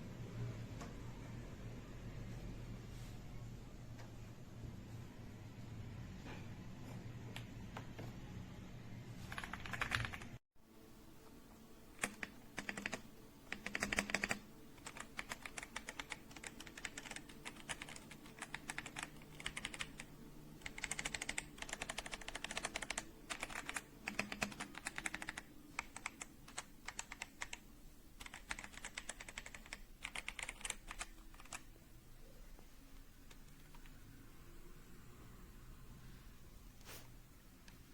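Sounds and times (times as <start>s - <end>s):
mechanical keyboard typing: 9.3s - 10.4s, 12.0s - 27.6s, 28.2s - 31.7s, 33.3s - 33.9s.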